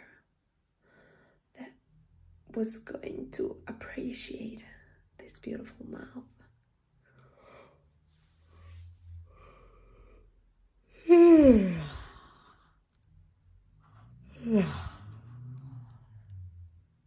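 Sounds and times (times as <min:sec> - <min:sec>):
woman yawning: 0:11.0 - 0:12.1, 0:14.4 - 0:14.9.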